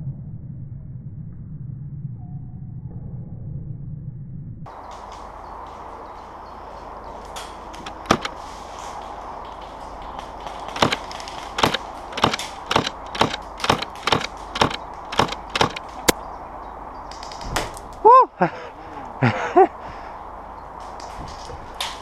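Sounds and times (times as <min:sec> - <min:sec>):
airsoft gun shots: 0:07.8 - 0:08.3, 0:10.8 - 0:16.2.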